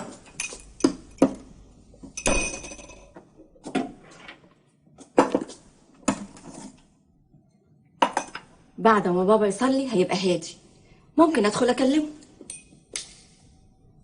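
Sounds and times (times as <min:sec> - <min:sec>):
dishes and cutlery clinking: 0:00.0 - 0:03.2
glass ringing: 0:02.2 - 0:03.1.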